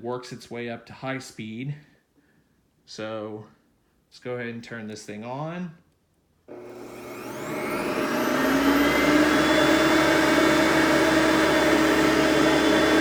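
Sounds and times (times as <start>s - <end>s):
vacuum cleaner motor whining: 6.5s - 13.0s.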